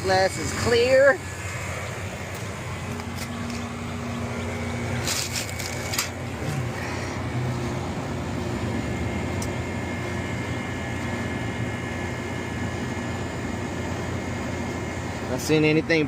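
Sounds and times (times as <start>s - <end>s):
condensing unit humming: 0.0s - 16.0s.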